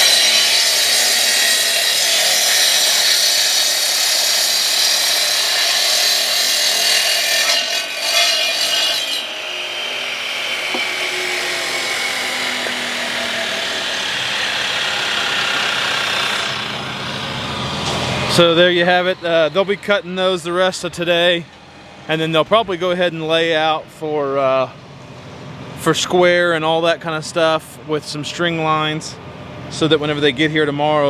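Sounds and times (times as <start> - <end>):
masonry saw cutting concrete: 0.0 - 21.5.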